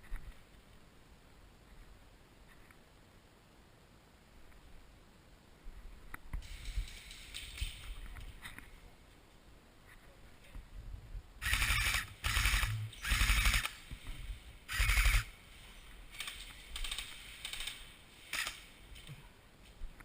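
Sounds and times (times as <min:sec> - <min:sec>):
airsoft gun firing rapid bursts: 0:11.4 - 0:13.8, 0:14.7 - 0:15.3.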